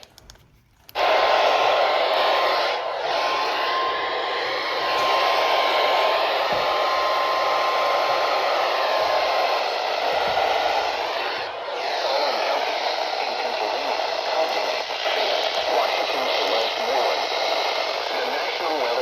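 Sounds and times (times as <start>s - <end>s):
radio static hiss: 11.1s - 19.0s.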